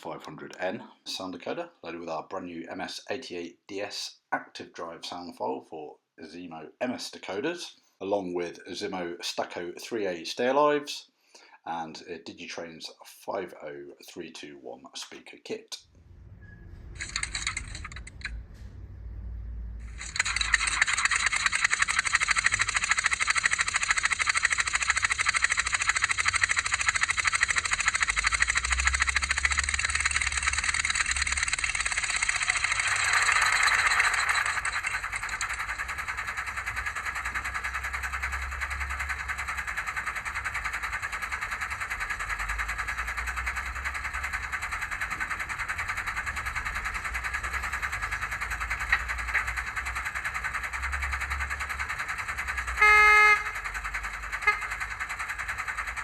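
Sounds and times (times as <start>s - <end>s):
model diesel engine sound: 15.8s - 56.0s
short horn toot: 52.8s - 53.6s.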